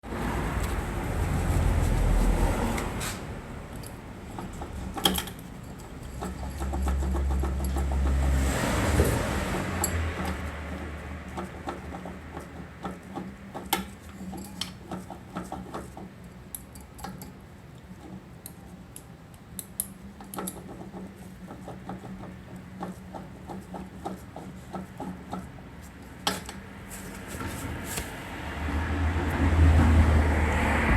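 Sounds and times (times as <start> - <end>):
vehicle engine humming: 0.0 - 12.8, 26.6 - 30.9.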